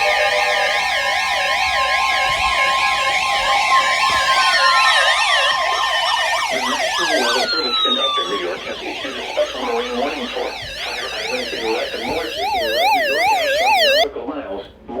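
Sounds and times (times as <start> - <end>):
steady tone: 0.0 - 14.0
sirens wailing: 0.0 - 14.1.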